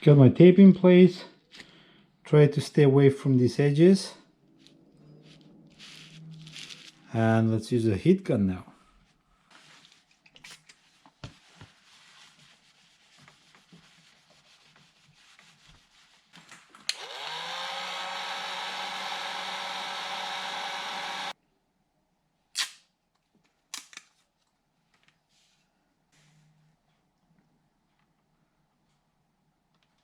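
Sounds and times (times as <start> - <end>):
faint handling noises: 4.4 - 7.2, 8.8 - 15.7, 23.1 - 30.0
heat gun fan whining: 16.8 - 21.4.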